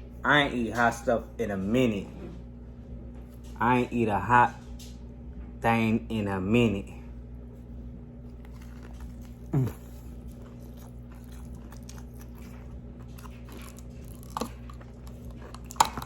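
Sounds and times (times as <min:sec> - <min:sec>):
crunchy chewing of fried chicken: 0:07.5 - 0:16.0.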